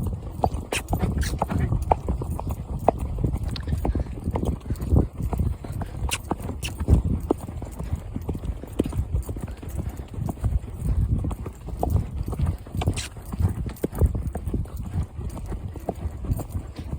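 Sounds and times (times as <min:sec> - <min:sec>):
horse hoofbeats: 0:00.0 - 0:16.9.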